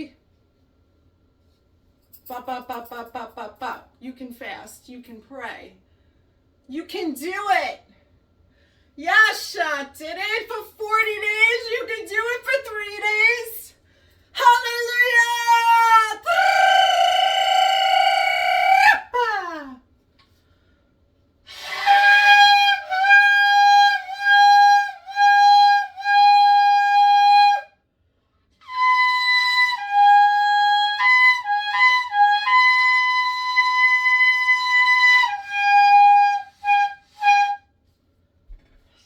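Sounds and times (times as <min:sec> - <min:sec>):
shofar blasts: 0:21.5 - 0:27.7.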